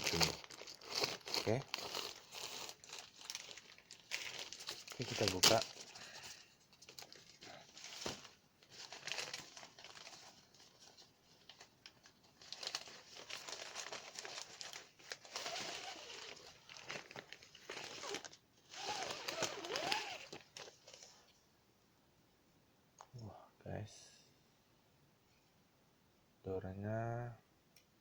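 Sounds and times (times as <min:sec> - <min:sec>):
plastic wrapping crinkling: 0:00.0 - 0:21.4
plastic rubbing squeaks: 0:15.3 - 0:16.5, 0:17.7 - 0:21.0.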